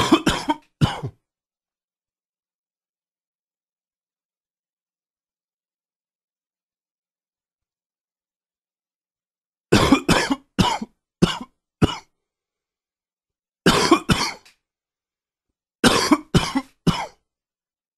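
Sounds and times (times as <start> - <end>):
man coughing: 0.0 - 1.2, 9.7 - 12.1, 13.7 - 14.5, 15.8 - 17.2.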